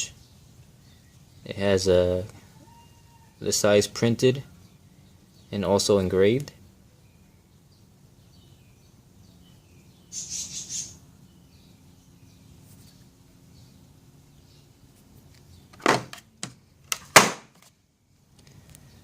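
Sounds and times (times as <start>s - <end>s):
faint bird chirps: 0.0s - 3.5s, 6.6s - 14.8s
rustle: 6.1s - 19.0s.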